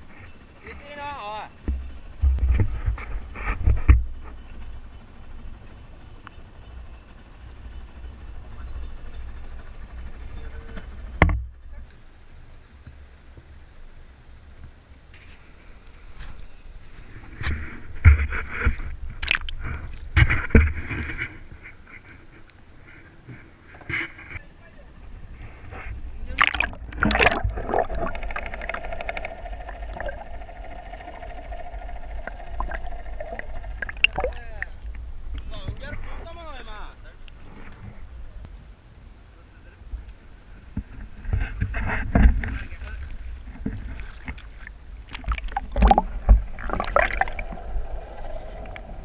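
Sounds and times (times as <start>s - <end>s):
boat engine rumble: 0.0s - 38.4s, 39.8s - 49.0s
steady mechanical hum: 0.0s - 49.0s
low rumble: 25.0s - 35.9s, 44.8s - 49.0s.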